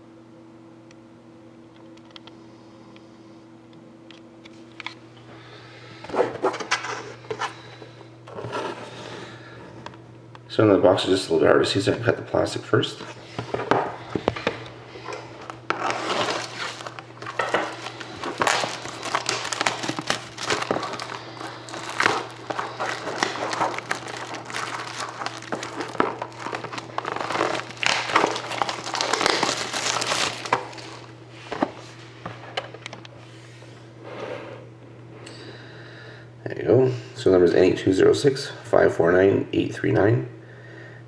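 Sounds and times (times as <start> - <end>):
plastic shrink-wrap crinkling: 14.3 - 31.8.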